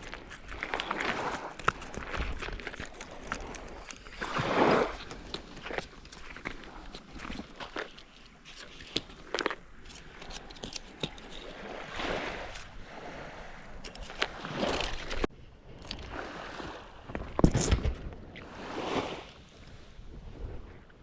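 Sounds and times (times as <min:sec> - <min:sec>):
small waves washing on shore: 0:00.0 - 0:17.7, 0:18.4 - 0:20.7
wind on microphone: 0:10.3 - 0:21.0.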